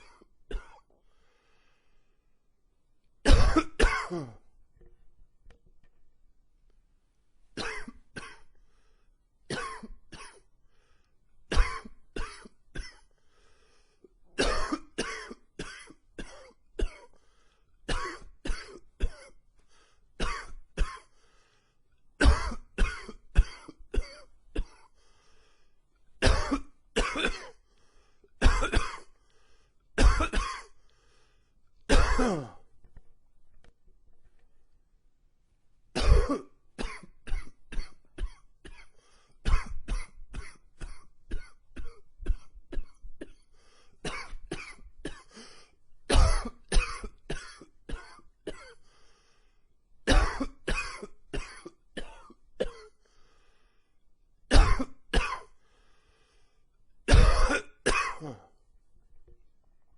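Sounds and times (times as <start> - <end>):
man coughing: 3.3 - 4.5, 7.6 - 8.5, 9.5 - 10.4, 11.5 - 13.1, 14.4 - 17.1, 22.2 - 24.9, 26.2 - 27.6, 28.4 - 29.1, 30.0 - 30.7, 31.9 - 32.6, 36.0 - 38.9, 44.0 - 48.8, 50.1 - 52.9, 54.5 - 55.5, 57.1 - 58.5.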